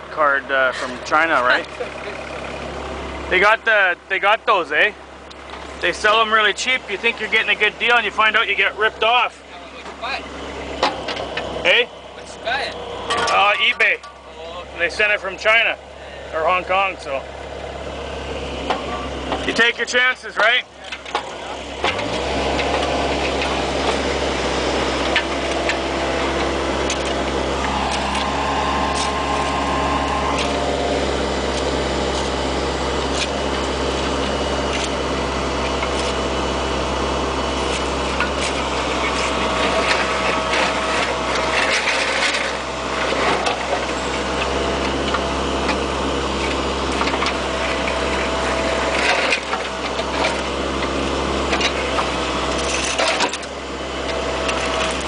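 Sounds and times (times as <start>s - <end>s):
diesel engine running: 0.0s - 55.0s
hydraulic whine: 0.0s - 55.0s.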